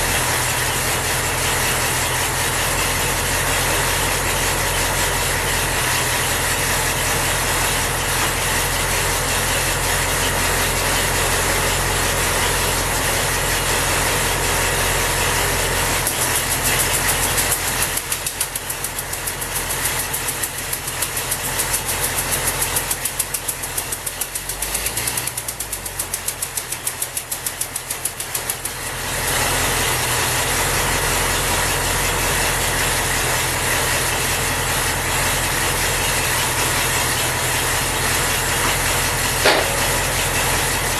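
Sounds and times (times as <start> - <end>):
car engine running: 0.0 - 40.9.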